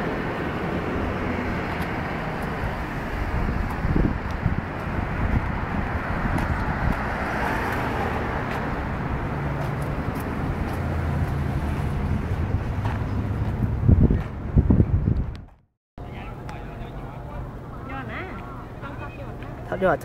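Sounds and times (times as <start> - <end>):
wind buffeting microphone: 0.0 - 15.6
road vehicle rumble: 0.0 - 20.0.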